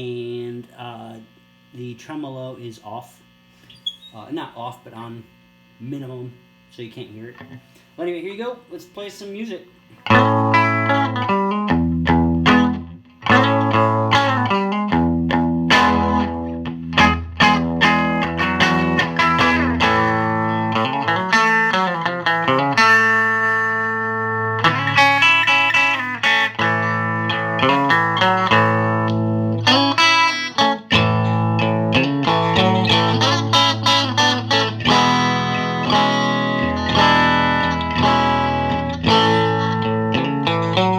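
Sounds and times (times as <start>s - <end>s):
electric guitar noodling: 10.0s - 40.9s.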